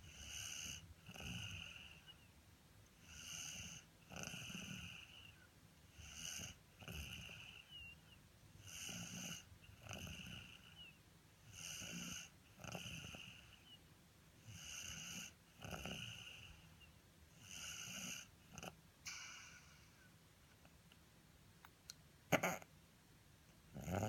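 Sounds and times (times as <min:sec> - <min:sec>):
person snoring: 0:17.4 - 0:20.1, 0:23.8 - 0:24.0.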